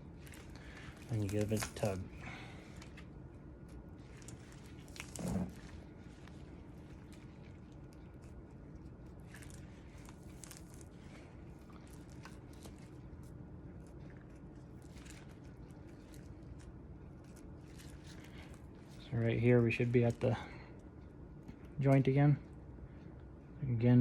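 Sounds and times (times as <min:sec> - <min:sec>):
low background hum: 0:00.0 - 0:24.0
hide crackling and tearing: 0:00.1 - 0:03.1, 0:04.0 - 0:19.0.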